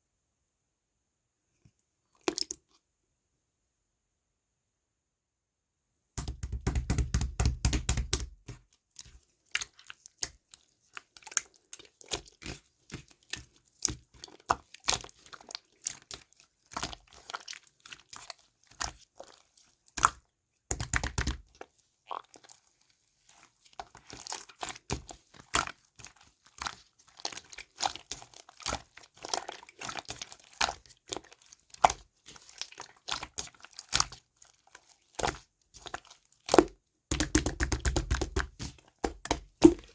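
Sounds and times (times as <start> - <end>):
slime crackling and popping: 20.0 - 21.5, 26.6 - 39.9.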